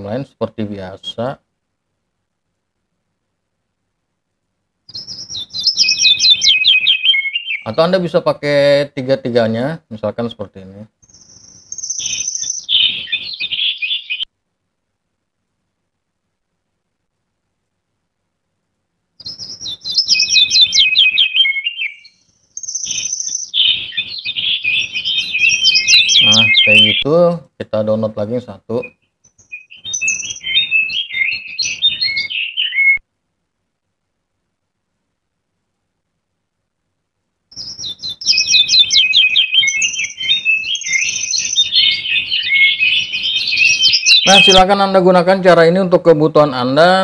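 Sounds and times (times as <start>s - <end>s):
birdsong chirps and trills: 4.9s - 9.6s, 10.2s - 14.3s, 19.2s - 27.1s, 27.8s - 33.0s, 37.5s - 46.7s.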